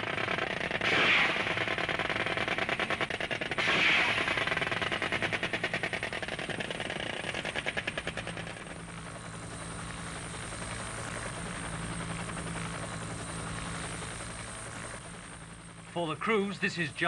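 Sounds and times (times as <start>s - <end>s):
helicopter in flight: 0.0s - 17.0s.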